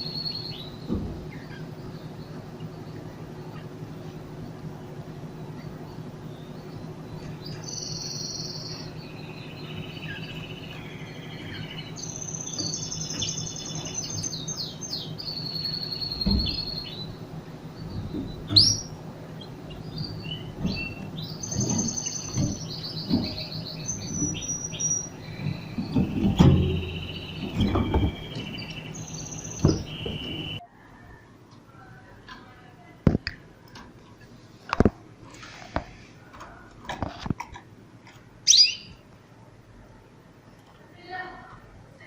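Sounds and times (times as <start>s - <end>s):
canaries chirping and singing: 0.0s - 3.7s, 5.6s - 30.6s
low steady hum: 0.0s - 42.0s
dull knocks: 17.8s - 19.1s, 19.8s - 24.6s, 25.2s - 30.6s.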